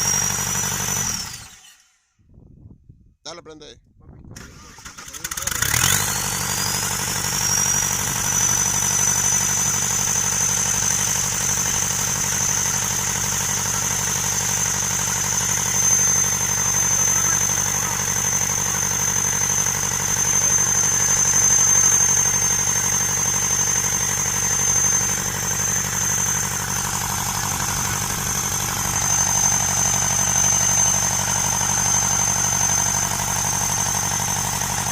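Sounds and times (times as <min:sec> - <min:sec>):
diesel engine idling: 0:00.0 - 0:01.6, 0:04.7 - 0:34.9
high whine: 0:14.5 - 0:34.9.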